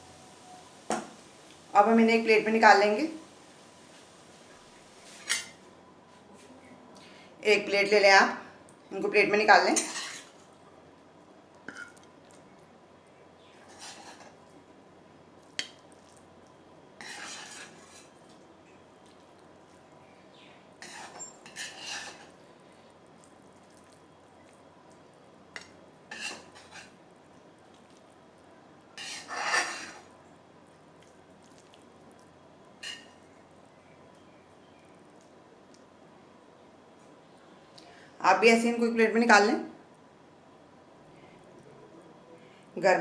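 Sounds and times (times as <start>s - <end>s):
spoon scraping a pan: 5.0s - 5.6s, 9.8s - 10.4s, 13.6s - 14.4s, 17.0s - 18.2s, 20.8s - 22.4s, 25.6s - 27.0s, 29.0s - 30.1s, 32.8s - 33.2s.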